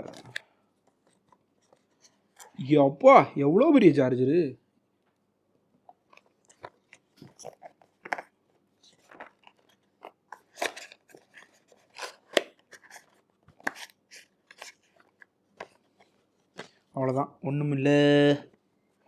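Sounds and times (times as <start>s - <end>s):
packaging crinkling and rustling: 6.0s - 16.9s.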